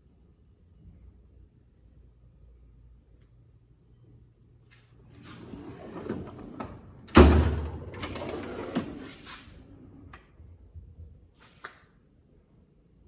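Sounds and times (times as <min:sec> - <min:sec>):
drawer sliding rattle: 0:05.2 - 0:10.1
steel drawer banging shut: 0:05.3 - 0:09.2.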